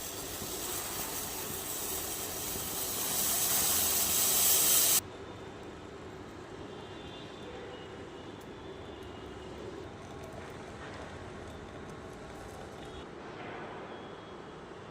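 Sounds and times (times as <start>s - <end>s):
pan hissing on gas stove: 0.0s - 5.0s.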